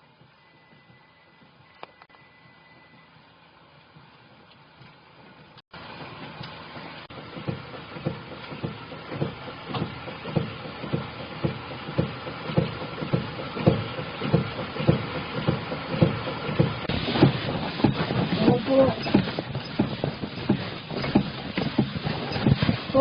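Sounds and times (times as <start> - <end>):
utility vehicle engine hum: 0.0 - 23.0
regular knocking: 6.4 - 23.0.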